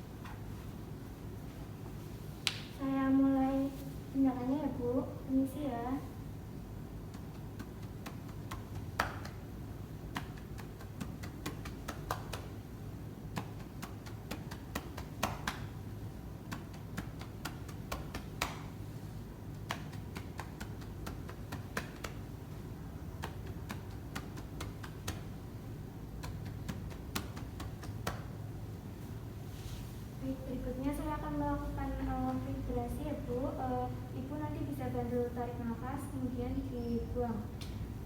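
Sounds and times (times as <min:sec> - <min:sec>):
steady low hum: 0:00.0 - 0:38.0
hands clapping on chest: 0:02.4 - 0:02.7, 0:07.1 - 0:12.6, 0:13.3 - 0:15.8, 0:16.4 - 0:18.8, 0:19.5 - 0:22.4, 0:23.1 - 0:25.4, 0:26.1 - 0:28.4.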